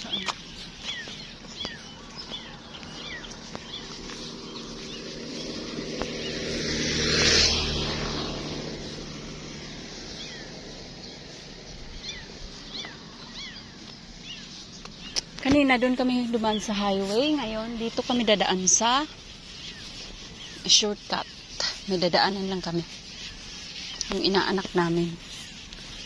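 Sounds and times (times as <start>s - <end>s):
birds chirping: 0.0s - 26.0s
vehicle passing by: 0.0s - 26.0s.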